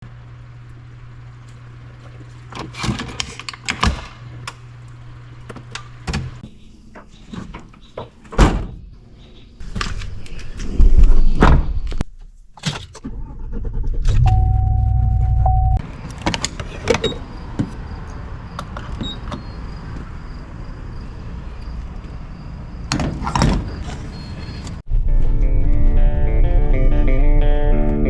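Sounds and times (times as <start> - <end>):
car engine humming: 12.2 - 24.9
loud low rumbling: 13.1 - 15.8, 24.8 - 28.0.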